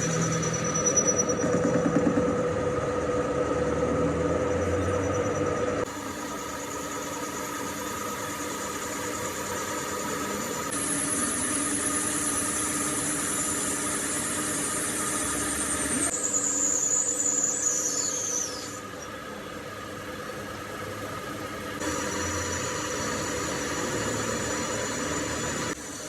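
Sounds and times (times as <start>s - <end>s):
high-pitched cutting squeal: 0.0s - 1.7s, 9.0s - 18.8s, 21.8s - 25.8s
machine hum: 0.0s - 26.0s.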